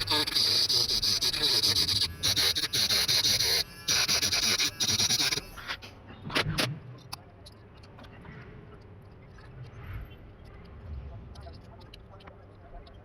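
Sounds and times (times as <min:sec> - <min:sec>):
electric drill grinding metal: 0:00.0 - 0:05.7.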